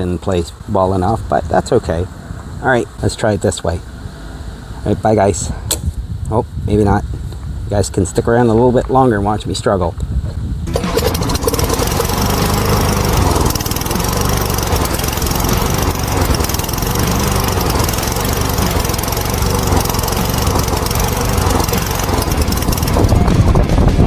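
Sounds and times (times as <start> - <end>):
lawn mower engine running: 10.7 - 24.0.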